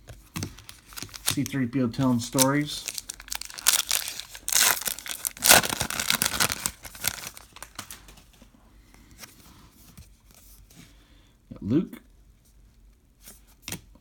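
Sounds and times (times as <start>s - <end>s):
wrapper crinkling: 0.4s - 8.4s
wrapper sharp rip: 2.4s - 7.8s.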